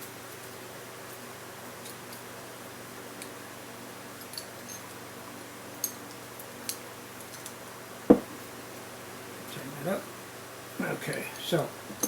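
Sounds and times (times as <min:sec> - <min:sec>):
steady low hum: 0:08.1 - 0:08.8.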